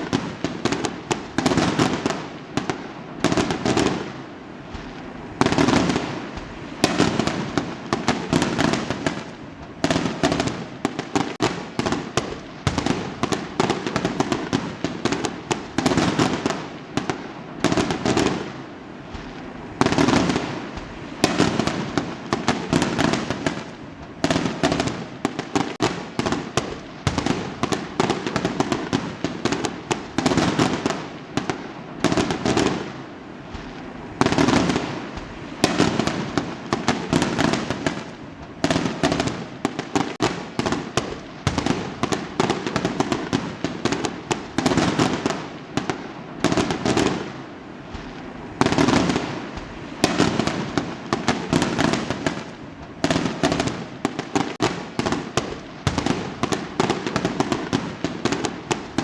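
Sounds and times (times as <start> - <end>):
fireworks booming: 0.0 - 59.0
fireworks crackling pops: 0.0 - 59.0.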